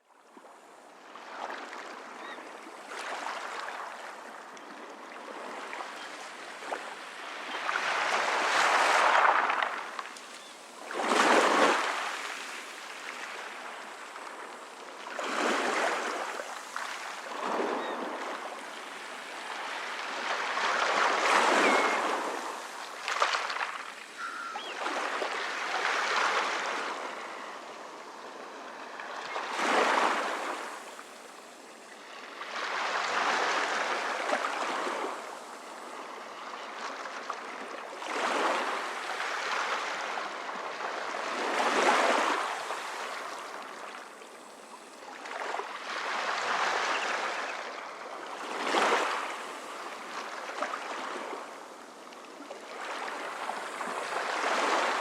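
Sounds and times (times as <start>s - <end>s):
small waves washing in: 5.2s - 27.5s.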